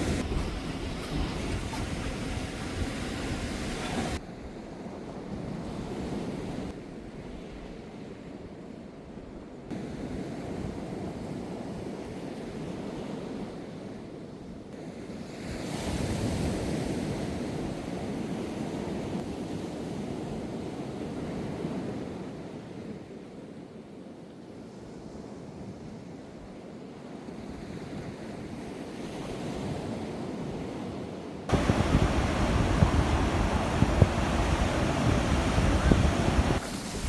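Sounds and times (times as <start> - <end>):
sea waves washing onto beach: 0.0 - 4.2, 31.4 - 37.0
wind buffeting microphone: 0.0 - 7.9, 28.4 - 37.0.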